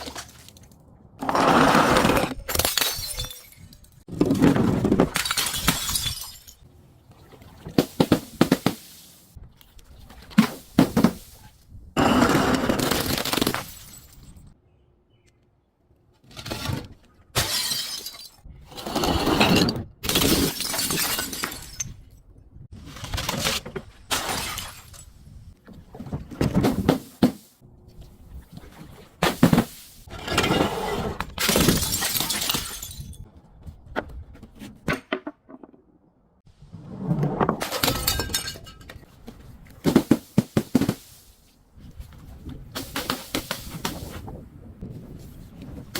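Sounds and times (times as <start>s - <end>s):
glass smashing and crunching: 2.5s - 4.0s, 5.1s - 6.6s, 12.8s - 14.5s, 17.4s - 18.4s, 20.1s - 22.0s, 24.1s - 25.1s, 31.4s - 33.2s, 37.6s - 38.9s.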